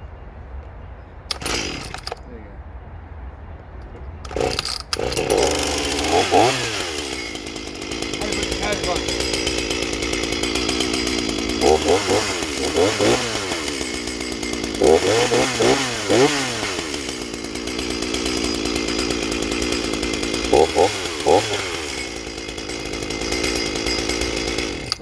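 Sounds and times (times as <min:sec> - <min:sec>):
chainsaw engine revving: 0:01.3 - 0:02.2, 0:04.2 - 0:25.0.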